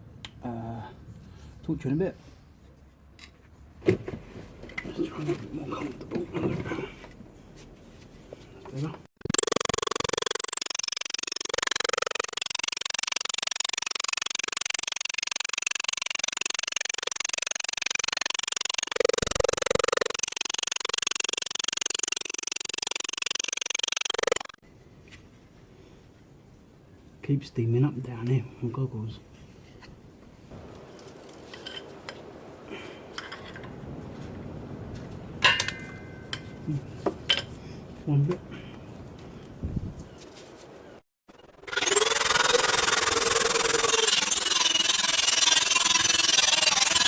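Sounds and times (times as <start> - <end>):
rotary tool grinding metal bolt: 9.2 - 24.6, 41.3 - 47.0.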